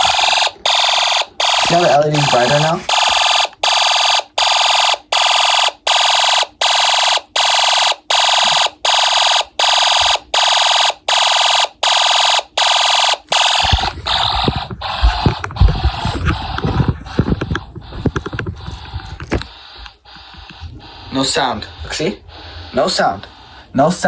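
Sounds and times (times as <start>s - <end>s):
toy fire alarm beeping: 0.0s - 15.4s.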